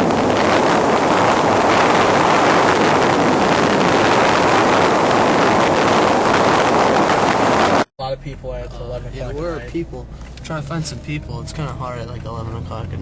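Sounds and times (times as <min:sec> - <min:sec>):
wind blowing on microphone: 0:00.0 - 0:07.9
wind and road noise from car: 0:00.0 - 0:13.0.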